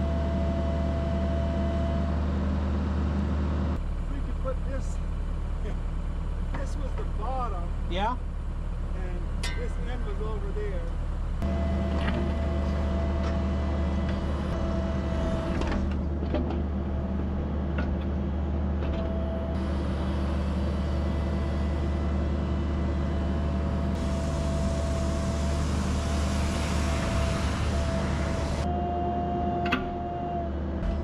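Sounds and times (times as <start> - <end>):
diesel engine running: 0.0 - 31.0
hydraulic whine: 11.2 - 16.8, 18.8 - 31.0.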